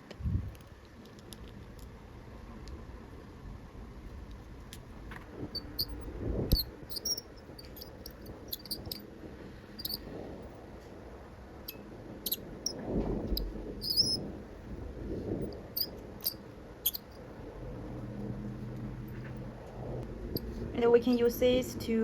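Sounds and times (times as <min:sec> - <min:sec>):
cutter blade chirping on plastic: 0:05.6 - 0:09.0, 0:12.3 - 0:14.2, 0:15.8 - 0:17.2.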